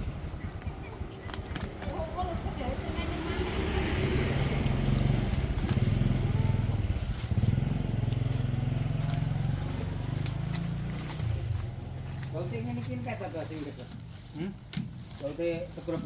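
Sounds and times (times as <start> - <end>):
vehicle engine running: 0.0 - 16.0.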